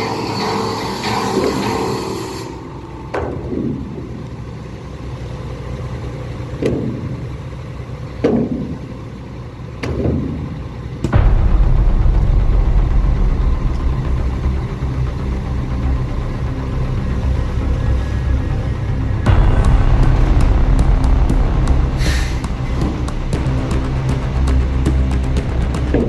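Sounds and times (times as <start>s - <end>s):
excavator diesel engine running: 0.0s - 26.0s
background music: 11.1s - 26.0s.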